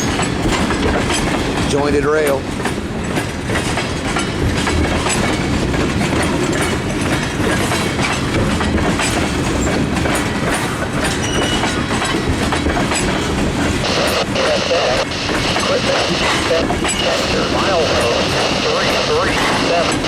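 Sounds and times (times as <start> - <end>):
freight train rumble: 0.0 - 20.0
train wheels clicking over rail joints: 0.0 - 20.0.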